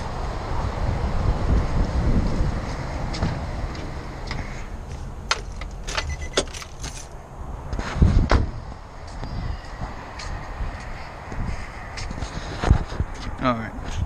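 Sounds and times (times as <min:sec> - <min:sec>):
keys jingling: 0:05.5 - 0:07.1.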